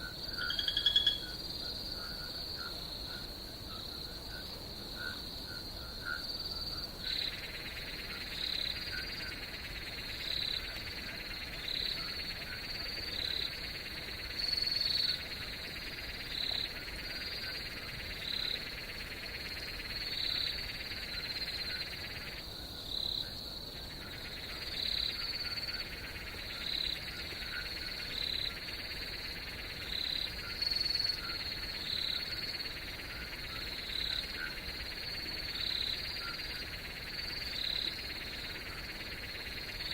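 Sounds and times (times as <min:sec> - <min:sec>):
high insect trill: 0:00.0 - 0:03.2
hissing frog chorus: 0:00.0 - 0:39.9.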